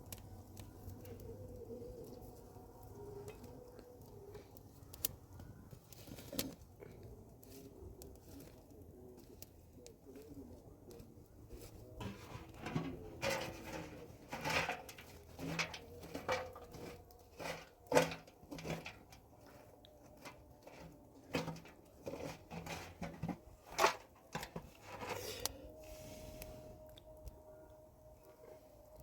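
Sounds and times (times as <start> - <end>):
objects knocking and clattering: 12.0 - 25.2.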